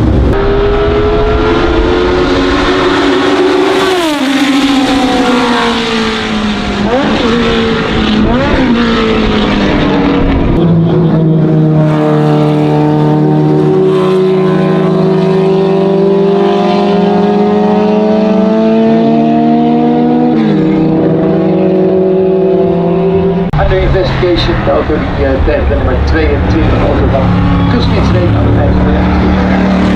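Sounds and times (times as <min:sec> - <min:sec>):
racing car engines at high revs: 0:00.0 - 0:29.9.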